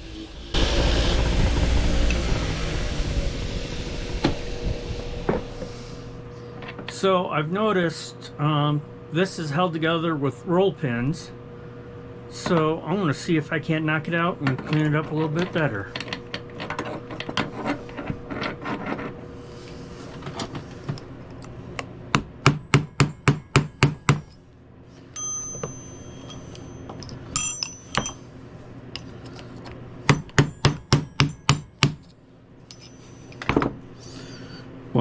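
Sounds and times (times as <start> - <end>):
hammer striking metal: 22.1 - 24.4, 25.2 - 28.3, 30.1 - 32.0
ringing metal clinks: 25.2 - 28.3, 32.7 - 33.5.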